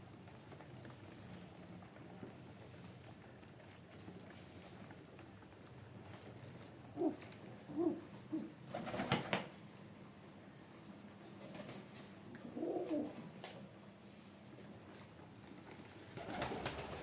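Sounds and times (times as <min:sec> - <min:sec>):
pigeon cooing: 0:06.9 - 0:09.0, 0:12.4 - 0:13.4
wings fluttering: 0:07.8 - 0:09.6, 0:16.0 - 0:17.0.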